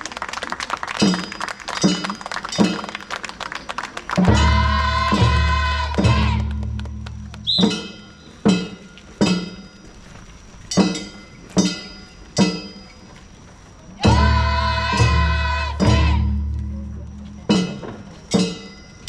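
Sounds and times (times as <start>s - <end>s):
struck percussion strokes: 4.2s - 13.2s, 14.0s - 19.0s.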